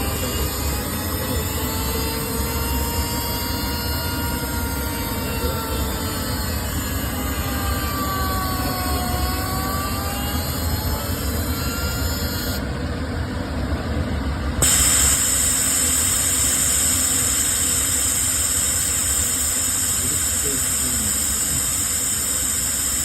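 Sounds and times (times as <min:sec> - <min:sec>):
machine low rumble: 0:13.8 - 0:23.0
loud hiss of sandblasting: 0:14.6 - 0:23.0.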